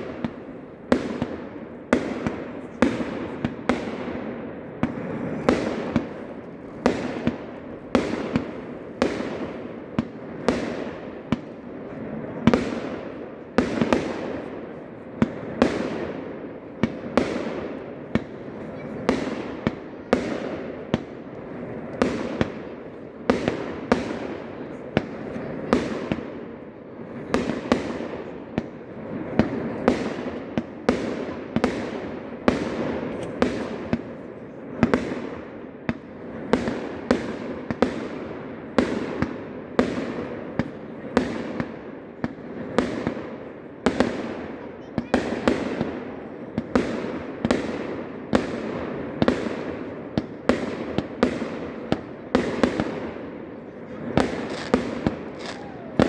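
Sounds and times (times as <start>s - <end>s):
fireworks banging: 0.0s - 56.0s.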